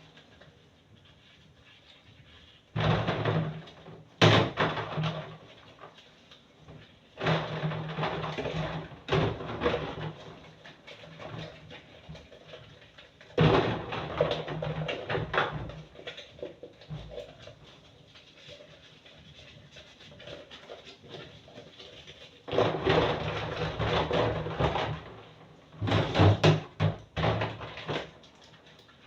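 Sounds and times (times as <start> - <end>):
kitchen clatter and knocks: 2.8 - 6.0, 7.2 - 12.6, 13.2 - 17.8, 20.2 - 29.0.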